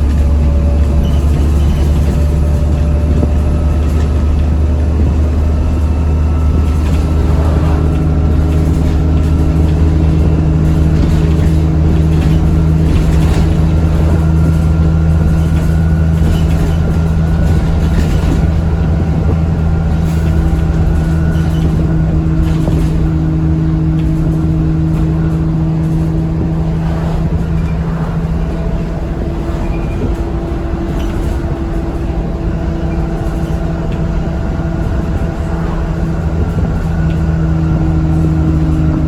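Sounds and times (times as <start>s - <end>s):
bus diesel engine drone: 0.0s - 39.0s
high turbocharger whine: 4.9s - 22.9s.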